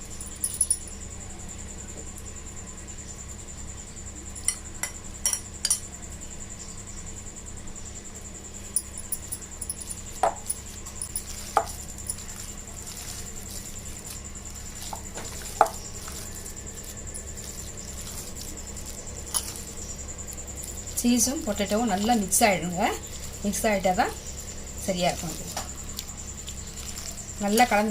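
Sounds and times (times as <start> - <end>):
steady low hum: 0.0 - 27.9
potato mashing squelches: 9.7 - 27.9
utensil tapping against bowl: 9.8 - 13.2, 14.8 - 18.5.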